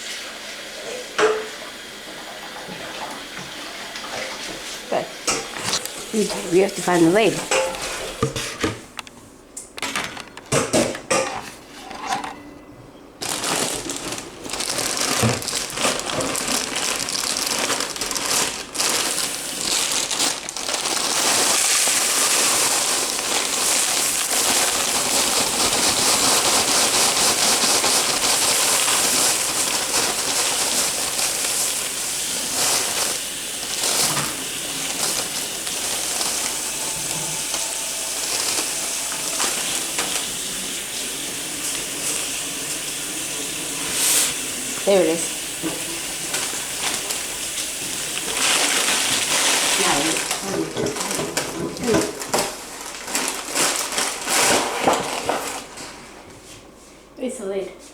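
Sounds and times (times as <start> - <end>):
kitchenware clattering: 1.2 - 1.6, 5.2 - 9.0, 9.8 - 14.1
tap running into sink: 1.2 - 1.6, 45.5 - 48.4.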